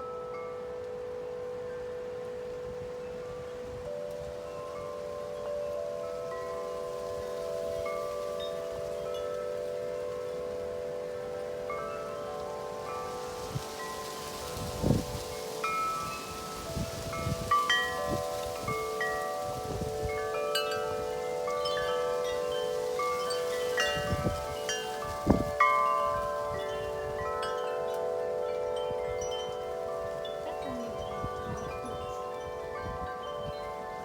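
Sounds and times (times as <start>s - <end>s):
wind chimes ringing: 0.0s - 34.0s
wind buffeting microphone: 10.1s - 34.0s.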